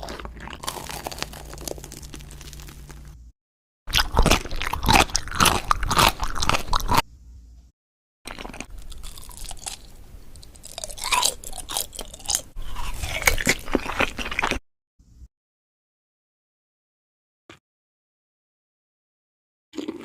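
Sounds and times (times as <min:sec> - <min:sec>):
crunchy chewing of food: 0:00.0 - 0:03.2, 0:03.9 - 0:07.1, 0:08.3 - 0:14.6, 0:19.8 - 0:20.0.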